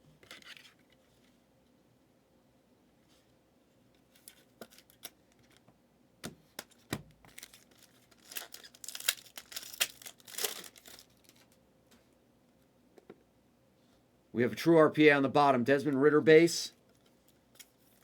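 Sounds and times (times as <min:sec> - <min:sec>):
wrapper tearing and crinkling: 0:07.3 - 0:11.6.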